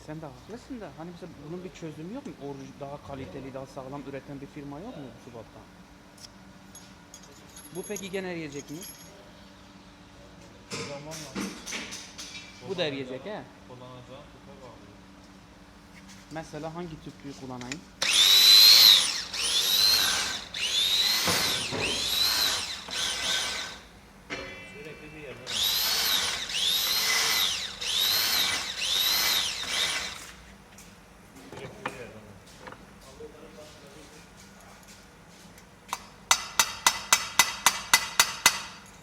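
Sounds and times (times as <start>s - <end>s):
small power tool whining: 18.0s - 23.9s, 25.4s - 30.4s
hammer tapping on metal: 35.9s - 38.8s.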